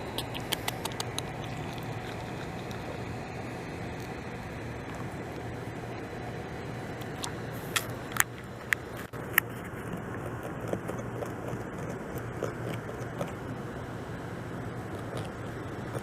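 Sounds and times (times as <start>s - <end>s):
beaver gnawing on log: 0.0s - 3.0s, 7.0s - 13.4s
low background hum: 0.0s - 16.0s.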